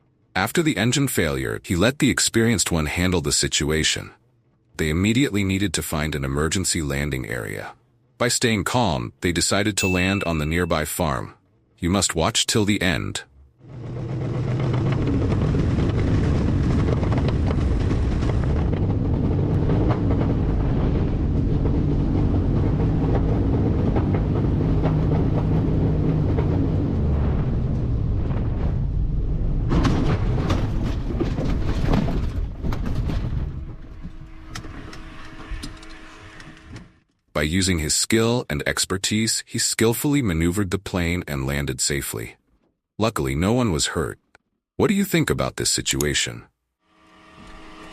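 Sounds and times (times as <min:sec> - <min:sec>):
aircraft rumble: 0:12.7 - 0:36.8.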